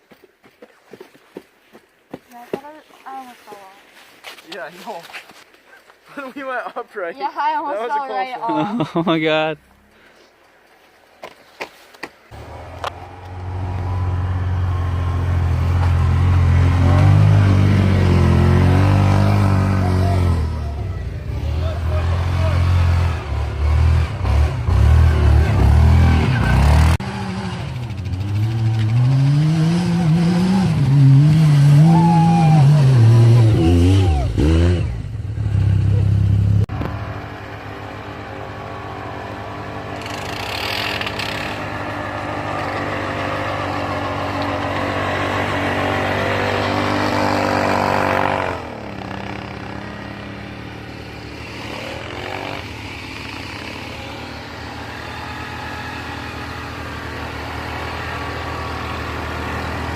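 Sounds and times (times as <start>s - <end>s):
off-road vehicle engine revving: 12.3s - 59.9s.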